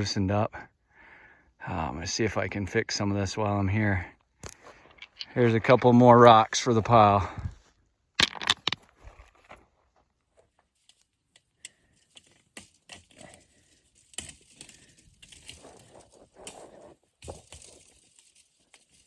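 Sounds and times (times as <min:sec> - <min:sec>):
rocks clacking on stone: 0:04.4 - 0:05.9, 0:08.2 - 0:09.6.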